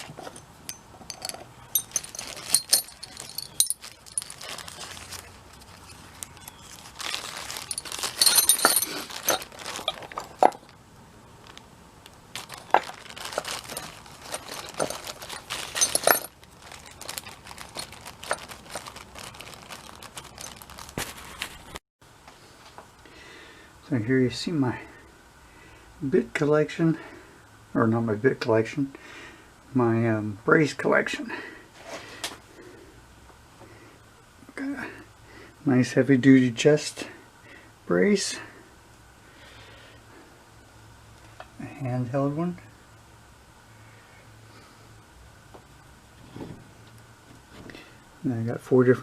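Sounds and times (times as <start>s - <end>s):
metal tools clinking: 0.0s - 5.1s, 5.8s - 10.6s, 12.4s - 18.8s
rustling: 0.0s - 10.8s, 12.3s - 21.8s.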